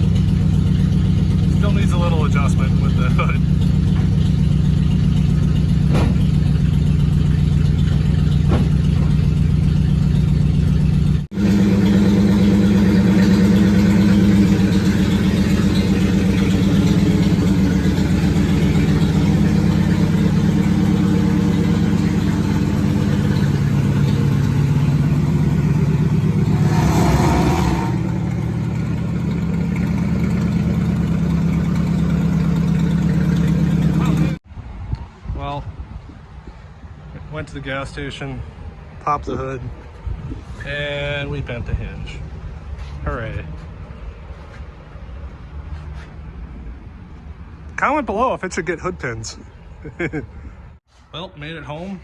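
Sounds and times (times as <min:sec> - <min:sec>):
car engine running: 0:00.0 - 0:34.4.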